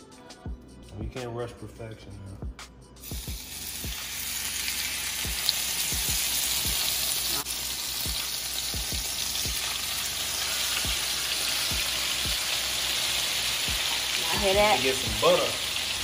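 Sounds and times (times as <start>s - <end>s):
steak sizzling in a pan: 3.0s - 16.0s
falling bass thuds from a beat: 8.0s - 9.7s.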